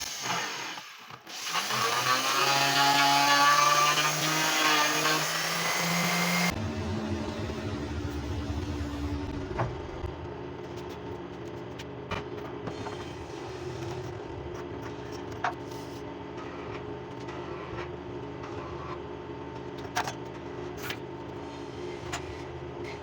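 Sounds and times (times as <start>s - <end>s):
power tool whining on wood: 0.0s - 6.6s
machine hum: 3.8s - 11.6s.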